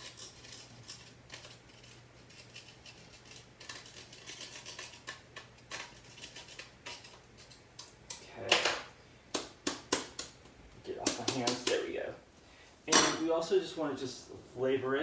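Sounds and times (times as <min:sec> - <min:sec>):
knife scraping zest off grater: 0:00.0 - 0:07.7.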